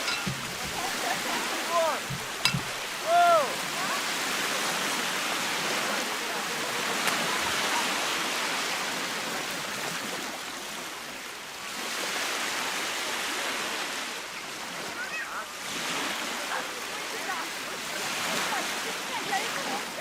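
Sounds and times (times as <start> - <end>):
small waves breaking on beach: 0.0 - 20.0.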